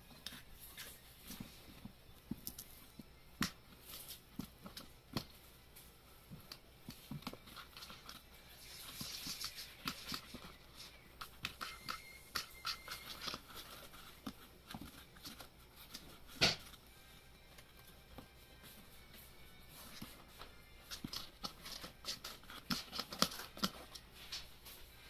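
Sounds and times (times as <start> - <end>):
kitten scratching cardboard: 0.1 - 17.2, 17.8 - 25.0.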